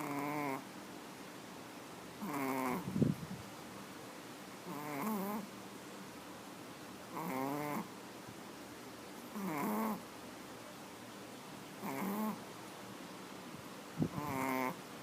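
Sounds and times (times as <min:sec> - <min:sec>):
pet snoring: 0:00.0 - 0:00.6, 0:02.2 - 0:02.9, 0:04.6 - 0:05.5, 0:07.1 - 0:07.9, 0:09.3 - 0:10.0, 0:11.8 - 0:12.4, 0:14.1 - 0:14.8.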